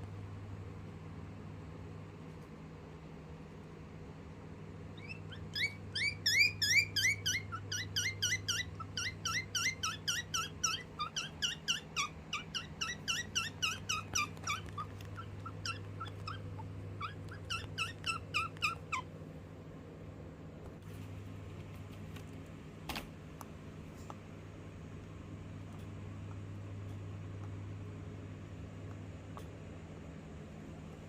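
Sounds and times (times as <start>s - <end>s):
guinea pig chirping: 4.9s - 19.2s.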